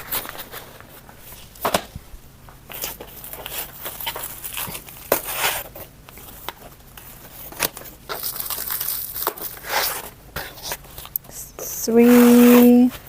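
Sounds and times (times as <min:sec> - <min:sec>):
packaging crinkling and rustling: 0:02.5 - 0:11.2.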